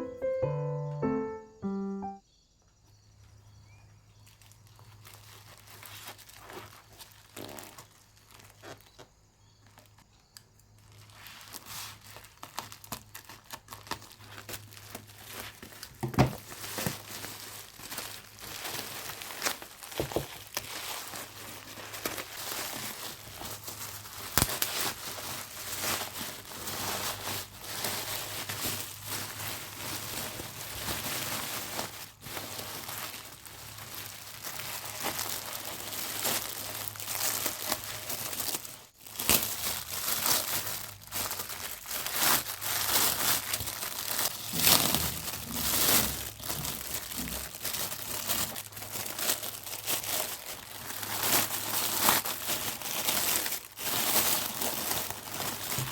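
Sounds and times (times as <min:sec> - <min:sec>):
packaging crinkling and rustling: 0:04.1 - 0:55.9.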